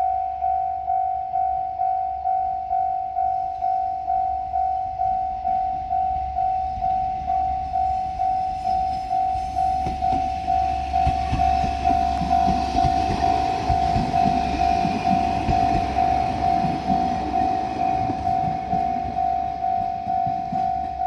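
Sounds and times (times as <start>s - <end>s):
level crossing warning bell: 0.0s - 21.0s
diesel train approaching: 3.0s - 21.0s
train wheels clicking over rail joints: 8.5s - 21.0s.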